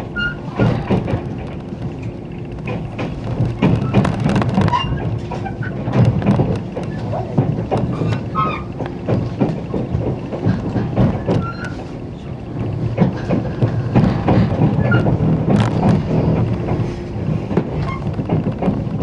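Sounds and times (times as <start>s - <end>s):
train running rumble: 0.0s - 19.0s
wheel knocks and rattles: 0.2s - 12.0s.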